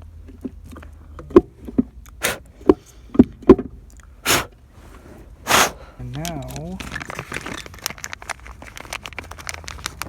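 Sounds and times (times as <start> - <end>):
hard parts knocking and clicking: 2.6 - 3.8
short hiss bursts: 4.2 - 4.5, 5.4 - 5.8.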